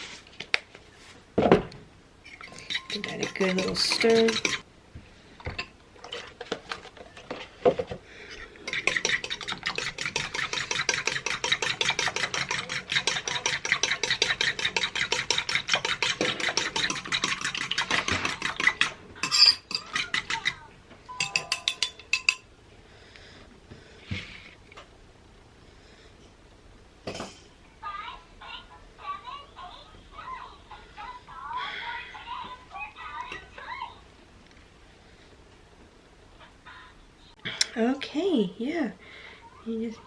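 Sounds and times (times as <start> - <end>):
fork clinking against bowl: 2.4 - 4.6, 8.7 - 20.6, 21.2 - 22.5.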